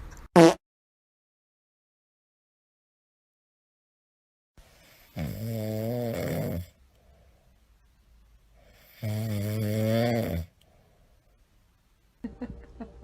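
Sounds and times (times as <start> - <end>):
pet snoring: 4.8 - 6.8, 8.8 - 10.5.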